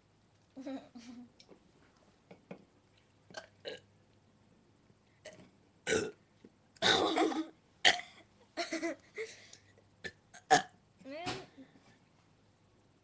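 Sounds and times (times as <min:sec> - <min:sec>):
person burping: 0:03.3 - 0:03.8, 0:05.2 - 0:06.2, 0:06.8 - 0:08.2, 0:10.0 - 0:10.8.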